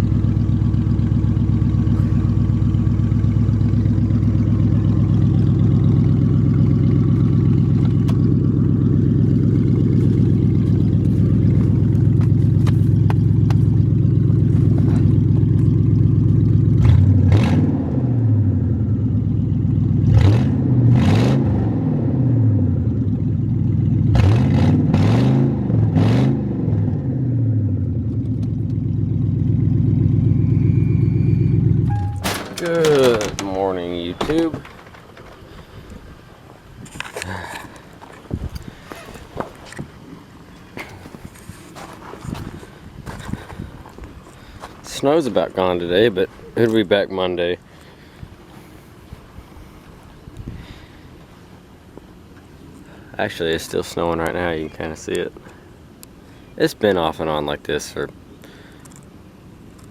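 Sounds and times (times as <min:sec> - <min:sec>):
car engine idling: 0:00.0 - 0:17.2, 0:18.2 - 0:20.1, 0:22.5 - 0:24.1, 0:27.5 - 0:41.2
engine revving: 0:16.7 - 0:18.6, 0:20.0 - 0:22.9, 0:24.0 - 0:27.9.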